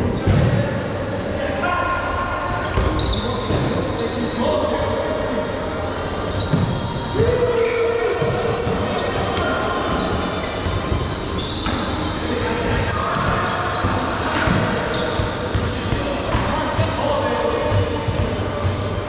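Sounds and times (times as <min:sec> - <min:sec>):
balls bouncing and hitting: 0:02.6 - 0:03.9, 0:08.2 - 0:19.0
short high squeaks: 0:11.3 - 0:13.8.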